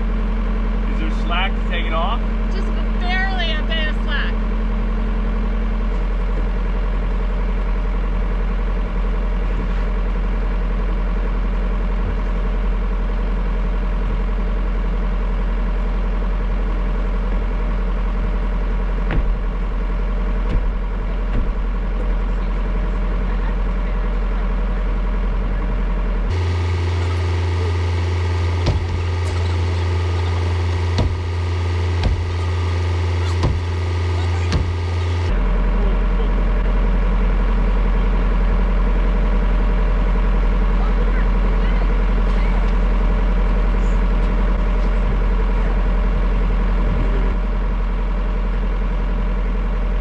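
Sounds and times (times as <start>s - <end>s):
excavator diesel engine humming: 0.0s - 50.0s
sharp knocks: 19.0s - 19.6s, 20.4s - 21.7s, 28.6s - 29.6s, 30.9s - 32.6s, 33.2s - 33.8s, 34.4s - 35.3s.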